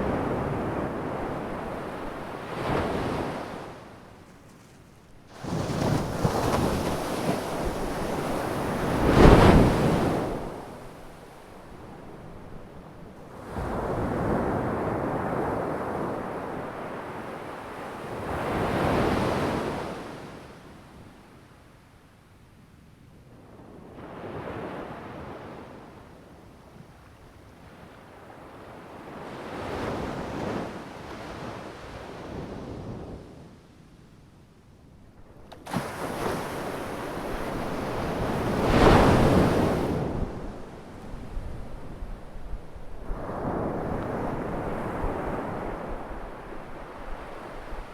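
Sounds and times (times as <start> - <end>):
ocean waves breaking: 5.3 - 11.2, 35.5 - 47.9.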